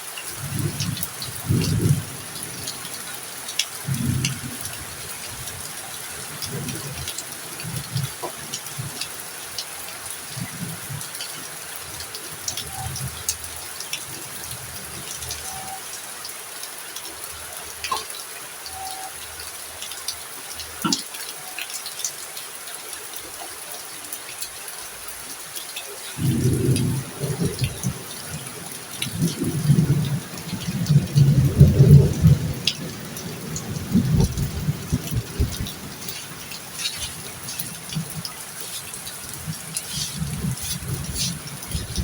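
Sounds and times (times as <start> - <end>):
heavy rain: 0.0 - 42.0
drops ticking: 20.8 - 21.6.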